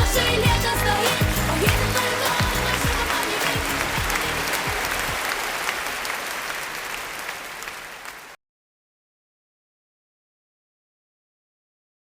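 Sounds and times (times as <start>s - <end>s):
pop music with kick drum: 0.0s - 5.2s
applause: 1.0s - 8.4s.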